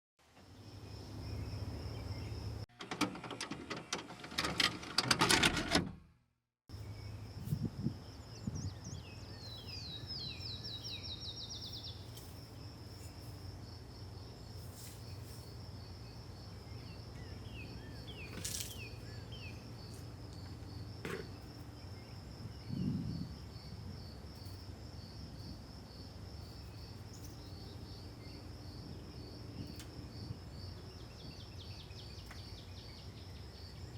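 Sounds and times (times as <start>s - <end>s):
crickets chirping: 0.4s - 2.7s, 6.7s - 33.9s
dense clicking and clattering: 2.7s - 6.0s.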